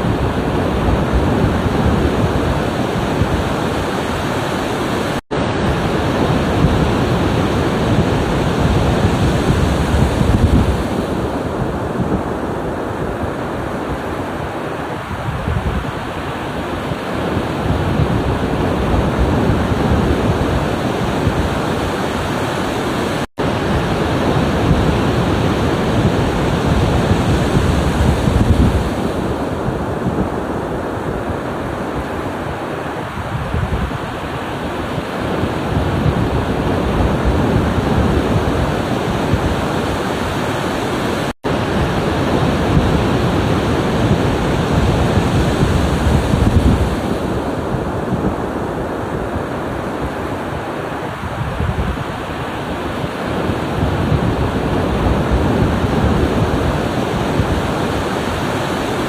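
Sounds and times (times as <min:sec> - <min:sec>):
ocean waves breaking: 0:00.0 - 0:59.0.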